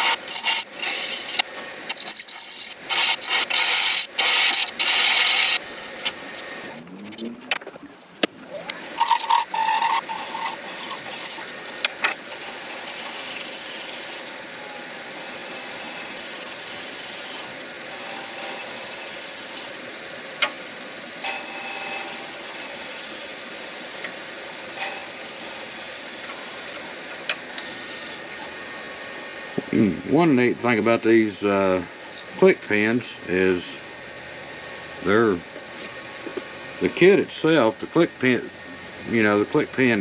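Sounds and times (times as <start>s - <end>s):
lathe tool scraping acrylic: 0.0s - 6.6s, 8.9s - 19.8s, 21.2s - 28.8s.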